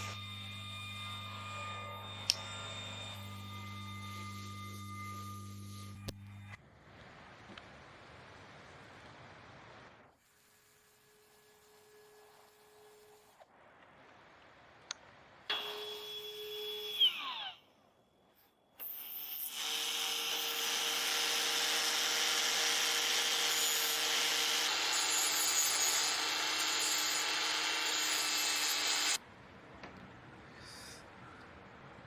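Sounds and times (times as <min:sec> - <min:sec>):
small power tool working wood: 0:00.0 - 0:06.6, 0:15.5 - 0:17.6, 0:18.8 - 0:29.2.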